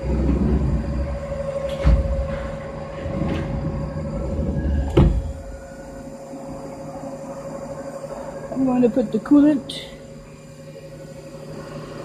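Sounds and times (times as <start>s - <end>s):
sliding doors rolling shut: 0.0s - 6.1s
steady machine whine: 0.0s - 12.0s
doors banging shut: 1.6s - 5.8s.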